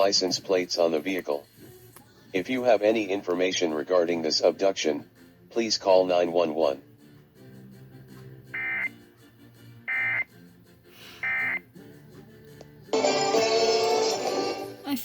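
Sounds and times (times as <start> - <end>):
faint background music: 0.0 - 15.0
loud music: 12.9 - 15.0.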